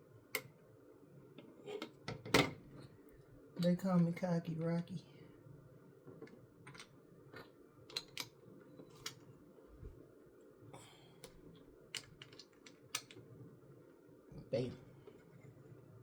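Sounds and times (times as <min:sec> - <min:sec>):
plastic bricks clicking together: 0:11.9 - 0:13.2.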